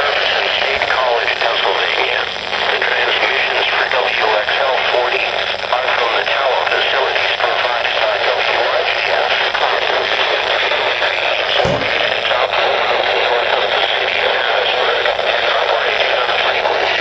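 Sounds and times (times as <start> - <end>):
radio static hiss: 0.0 - 17.0
brief low thump: 11.6 - 12.4.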